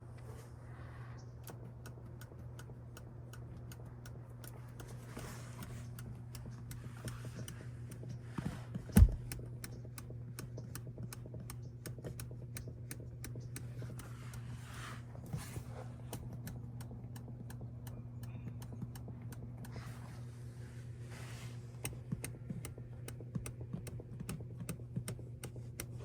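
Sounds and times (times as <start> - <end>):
steady low road hum: 0.0 - 26.0
car seat clicking: 5.2 - 9.5, 21.7 - 26.0.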